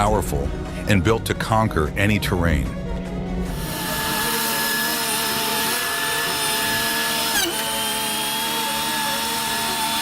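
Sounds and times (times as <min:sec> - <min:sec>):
machine high-pitched whine: 0:02.8 - 0:10.0.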